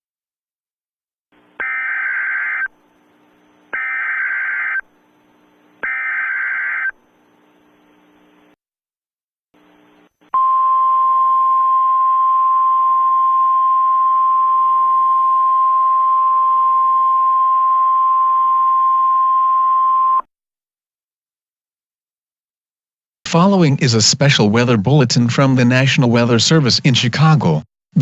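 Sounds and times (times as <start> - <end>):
high warning alarm tone: 1.6 - 2.7, 3.8 - 4.8, 5.8 - 7.0.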